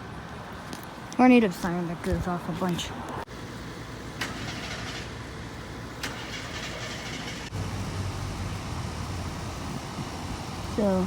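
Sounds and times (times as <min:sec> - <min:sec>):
road vehicle noise: 0:00.0 - 0:11.0
low engine hum: 0:05.1 - 0:11.0.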